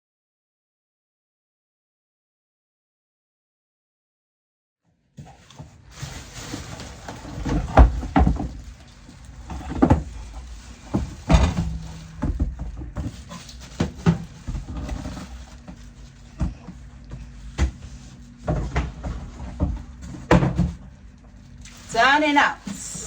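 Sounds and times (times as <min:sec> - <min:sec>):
cardboard box knocks and thumps: 0:07.3 - 0:08.6, 0:09.5 - 0:13.2, 0:18.5 - 0:20.8.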